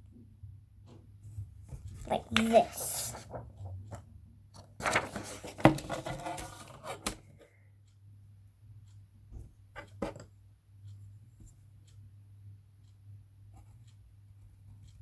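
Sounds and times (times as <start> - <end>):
paper rustling: 1.8 - 3.7, 4.8 - 7.2.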